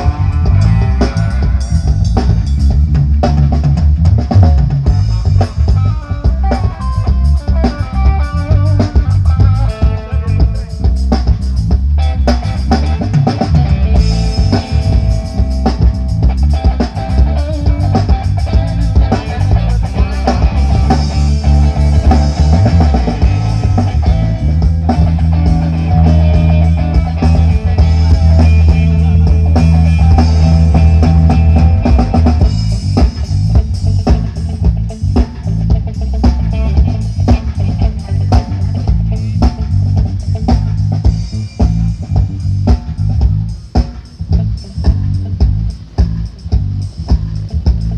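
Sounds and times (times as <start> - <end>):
heavy sustained bass: 0.0 - 47.9
loud rock music: 0.0 - 47.9.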